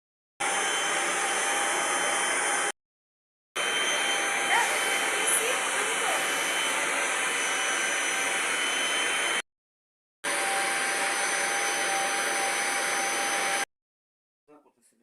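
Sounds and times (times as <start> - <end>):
vacuum cleaner motor whining: 0.4 - 2.7, 3.6 - 9.4, 10.2 - 13.7.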